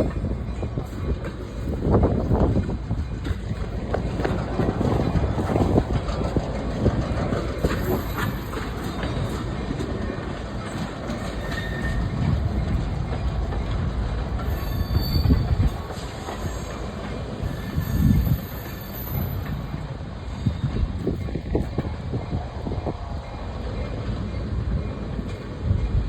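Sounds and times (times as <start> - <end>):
train wheels rumbling on track: 0.0 - 26.0
faint wheel squeals: 11.2 - 12.3, 14.4 - 19.5.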